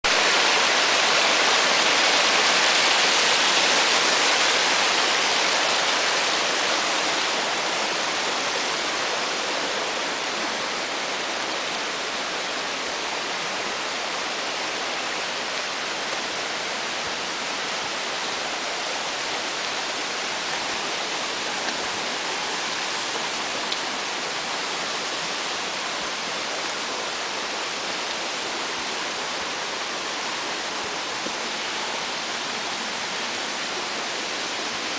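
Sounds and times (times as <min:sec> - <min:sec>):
rushing mountain stream: 0:00.0 - 0:34.9.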